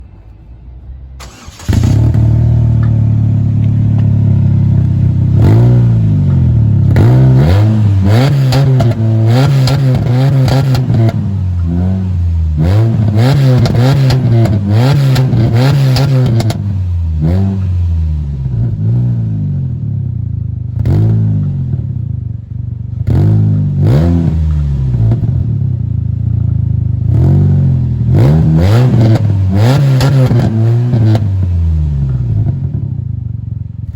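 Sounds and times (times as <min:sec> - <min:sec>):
car engine revving: 0:01.2 - 0:19.6, 0:22.9 - 0:25.5, 0:27.0 - 0:32.8
exhaust pops and crackles: 0:01.8 - 0:05.5.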